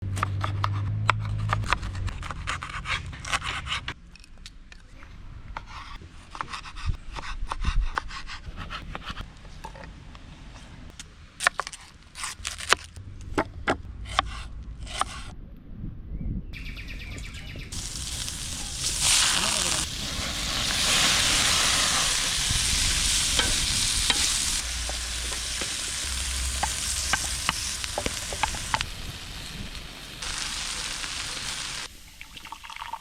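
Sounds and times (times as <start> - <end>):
low hum: 19.8 - 31.8.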